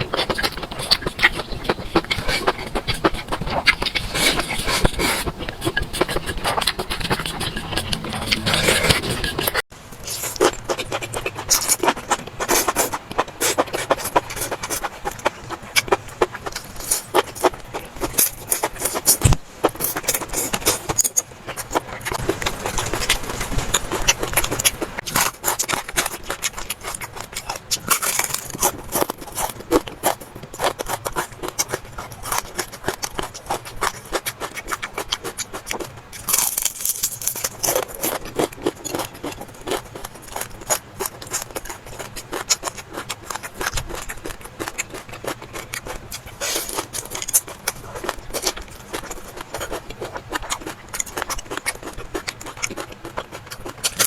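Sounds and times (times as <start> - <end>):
utensils scraping bowls: 0.0 - 9.6.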